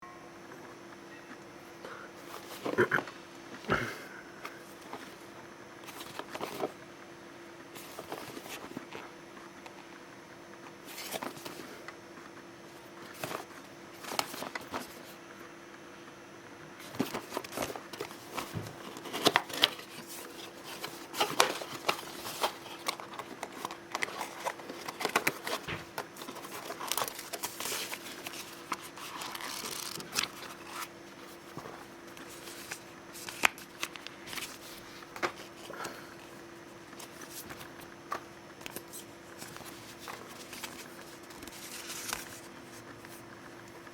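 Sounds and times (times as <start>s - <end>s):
faint steady hum: 0.0s - 43.9s
crinkling plastic and paper: 5.8s - 6.8s, 13.0s - 15.2s, 16.8s - 43.9s.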